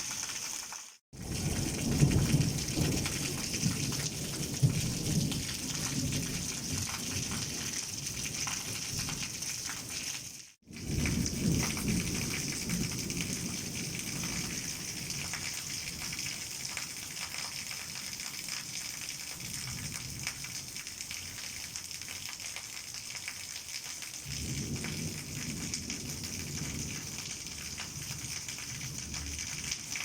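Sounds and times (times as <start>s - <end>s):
heavy rain: 0.0s - 30.0s
thunder rumbling: 1.2s - 9.3s, 10.7s - 16.2s, 24.3s - 30.0s.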